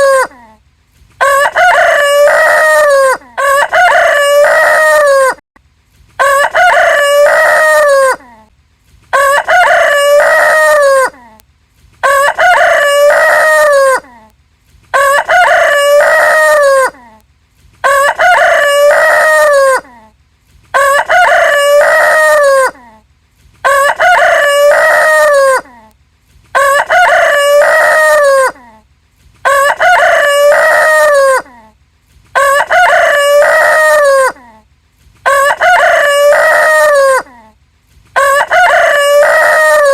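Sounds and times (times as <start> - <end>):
rooster crowing: 1.2 - 5.4, 6.2 - 8.3, 9.1 - 11.2, 12.0 - 14.0, 14.9 - 17.0, 17.8 - 19.9, 20.7 - 22.8, 23.6 - 25.7, 26.6 - 28.6, 29.4 - 31.6, 32.4 - 34.4, 35.2 - 37.4, 38.2 - 39.9.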